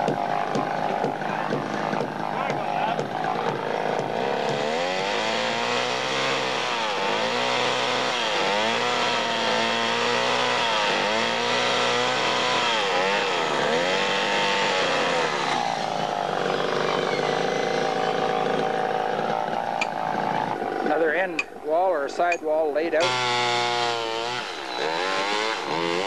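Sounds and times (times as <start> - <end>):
chainsaw running: 0.0 - 21.5, 22.2 - 26.0.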